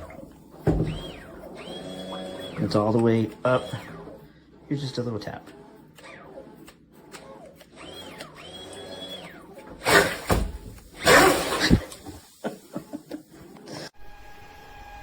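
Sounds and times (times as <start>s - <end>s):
electric motor whining: 0.0s - 4.2s, 5.6s - 12.4s.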